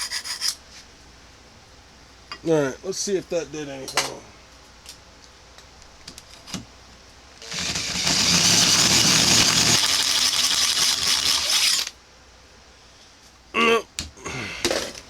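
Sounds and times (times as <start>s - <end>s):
drill grinding into steel: 7.4s - 11.9s.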